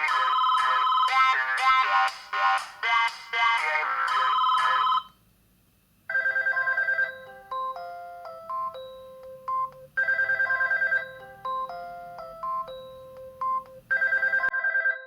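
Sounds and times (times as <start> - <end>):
phone ringtone: 0.0 - 5.1, 6.1 - 15.0.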